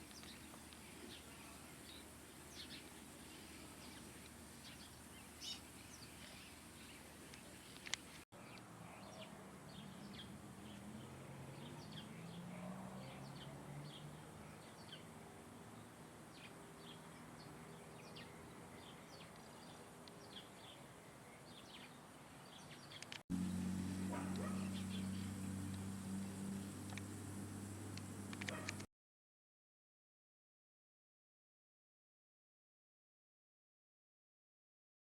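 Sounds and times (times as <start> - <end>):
birds chirping: 0.0 - 15.2, 15.8 - 28.9
low hum: 23.3 - 28.8.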